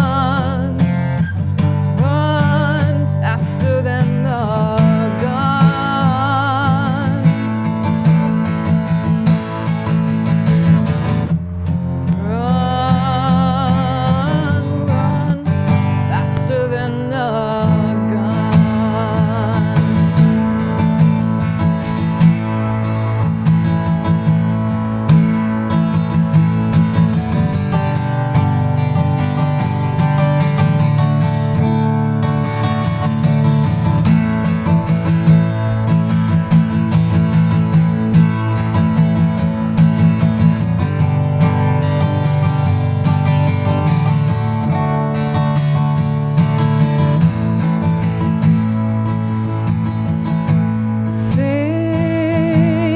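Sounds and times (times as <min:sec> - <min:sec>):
woman singing with vibrato: 0:00.0 - 0:07.8, 0:12.2 - 0:21.4, 0:51.0 - 0:52.9
acoustic guitar strumming: 0:00.0 - 0:52.9.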